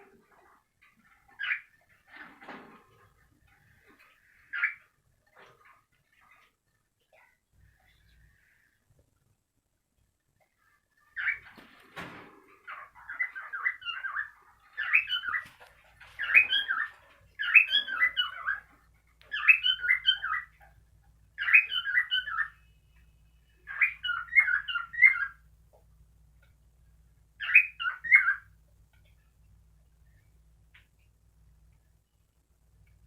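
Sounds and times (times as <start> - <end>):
cockatiel chirping and whistling: 12.7 - 15.4, 16.2 - 18.6, 19.3 - 20.5, 21.4 - 22.6, 23.7 - 25.4, 27.4 - 28.5.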